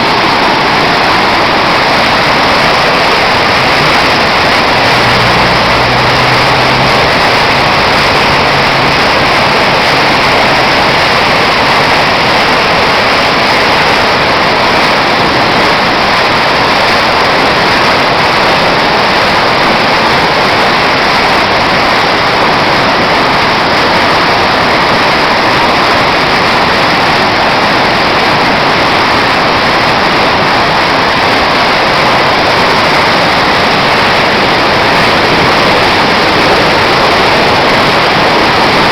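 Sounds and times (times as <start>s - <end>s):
heavy rain: 0.0s - 38.9s
wind noise: 0.0s - 38.9s
low hum: 2.0s - 13.6s.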